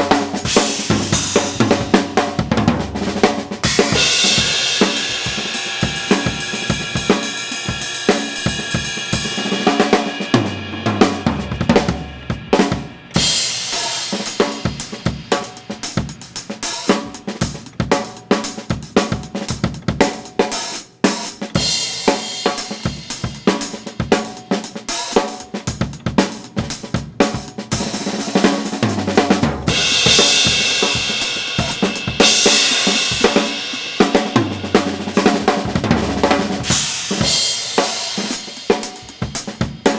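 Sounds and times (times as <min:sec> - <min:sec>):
crashing cymbals: 0:00.0 - 0:02.2, 0:03.6 - 0:15.7, 0:27.8 - 0:39.9
drum fills: 0:00.0 - 0:39.9.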